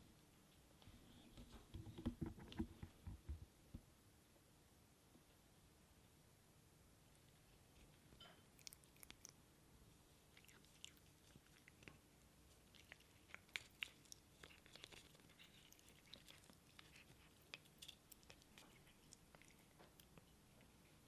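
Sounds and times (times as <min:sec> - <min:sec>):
faint clicks and crackles: 0:10.3 - 0:21.0.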